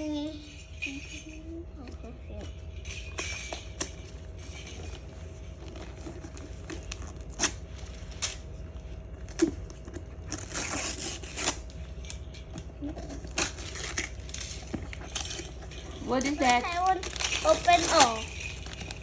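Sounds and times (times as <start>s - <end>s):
wrapping paper tearing and crinkling: 5.6s - 8.4s, 9.2s - 11.8s, 13.0s - 19.0s.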